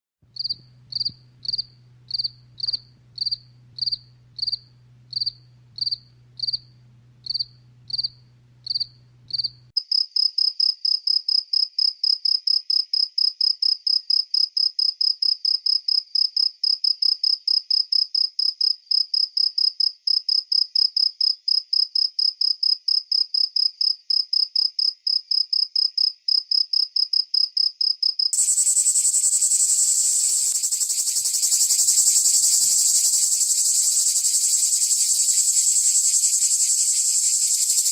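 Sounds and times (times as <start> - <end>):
faint low hum: 0.2 - 9.7
crickets chirping: 0.4 - 37.9.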